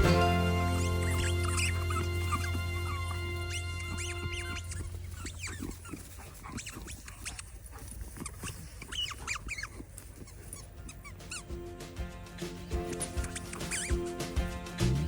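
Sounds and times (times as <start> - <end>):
background music: 0.0 - 4.7, 10.4 - 15.0
squeaky toy ball squeaking: 0.0 - 11.5, 12.8 - 14.2.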